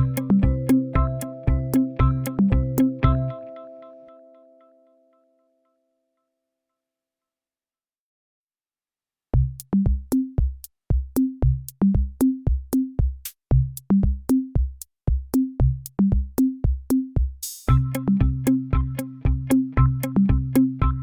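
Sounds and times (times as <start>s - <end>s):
drum-machine beat: 0.0s - 3.4s, 9.4s - 21.0s
synth music: 0.0s - 5.0s.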